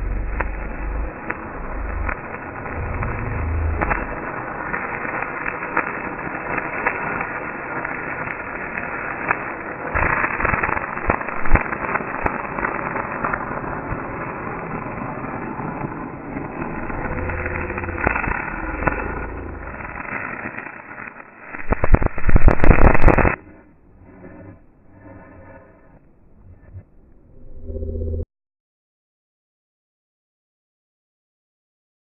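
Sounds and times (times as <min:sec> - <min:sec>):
welding arc crackling and popping: 0:00.0 - 0:24.4.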